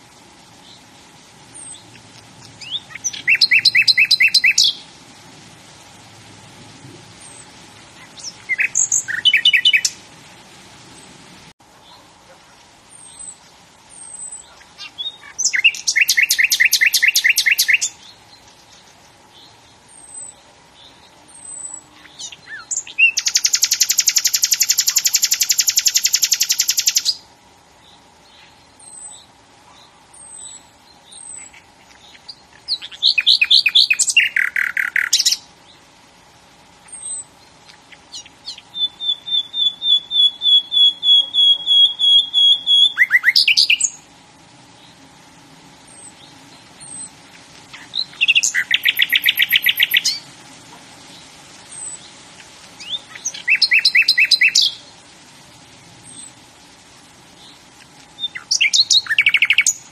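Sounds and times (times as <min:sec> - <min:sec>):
songbird singing trills: 0:01.5 - 0:04.9, 0:07.1 - 0:10.1, 0:12.9 - 0:35.9, 0:36.8 - 0:45.1, 0:45.8 - 0:50.3, 0:51.1 - 0:55.2, 0:55.9 - 0:56.4, 0:57.3 - 0:59.9
faint high chirps: 0:36.8 - 0:44.1, 0:45.8 - 0:50.2, 0:51.1 - 0:55.0.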